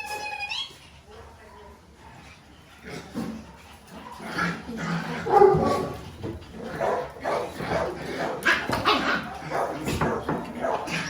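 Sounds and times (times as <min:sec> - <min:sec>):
puppies barking and yipping: 0:02.7 - 0:11.0.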